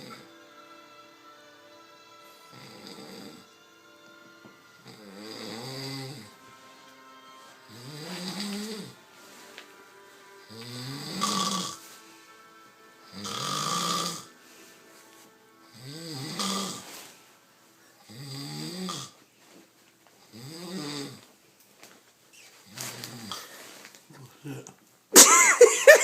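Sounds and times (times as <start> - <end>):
man snoring loudly: 2.5 - 3.5, 4.8 - 6.4, 7.7 - 9.0, 10.5 - 11.8, 13.1 - 14.4, 15.7 - 16.8, 18.0 - 19.2, 20.3 - 21.2.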